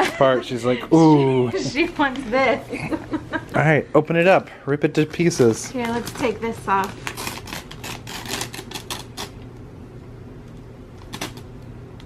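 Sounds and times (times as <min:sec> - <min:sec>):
paper crinkling and tearing: 0:05.2 - 0:09.4.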